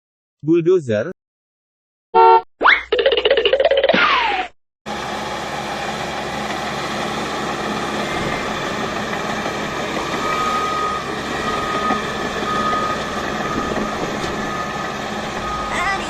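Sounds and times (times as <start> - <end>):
heavy vehicle engine running: 4.9 - 16.0
backup alarm beeping: 10.0 - 16.0.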